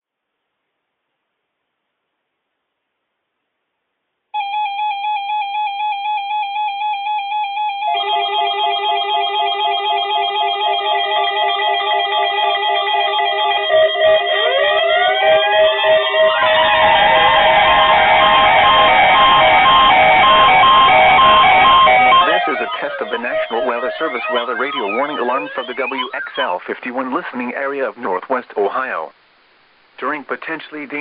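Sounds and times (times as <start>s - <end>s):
warbling electronic beep: 7.7s - 26.6s
rising whooping tones: 7.8s - 26.3s.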